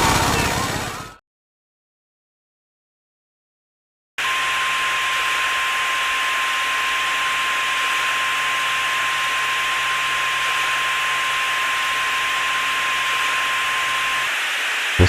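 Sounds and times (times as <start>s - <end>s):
tv static hiss: 9.3s - 15.0s.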